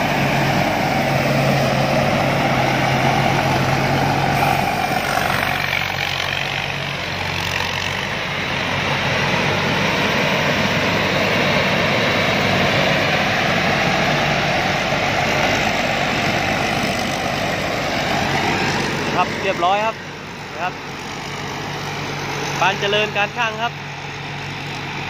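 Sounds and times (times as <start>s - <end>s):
combine harvester machinery din: 0.0s - 25.0s
low engine hum: 0.0s - 25.0s.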